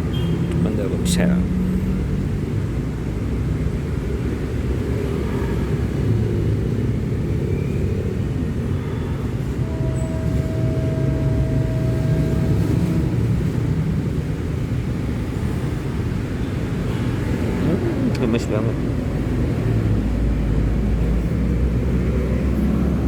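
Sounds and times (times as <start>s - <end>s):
low outdoor rumble: 5.8s - 16.7s
thin steady tone: 8.7s - 14.9s.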